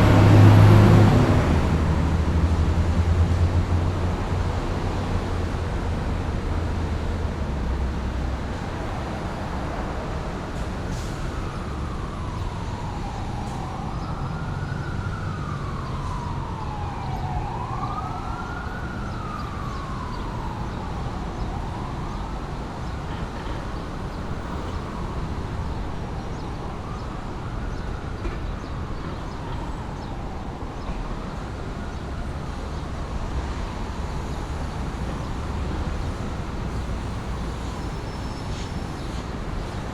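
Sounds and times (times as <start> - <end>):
city traffic rumble: 0.0 - 39.9
siren wailing: 11.2 - 23.3.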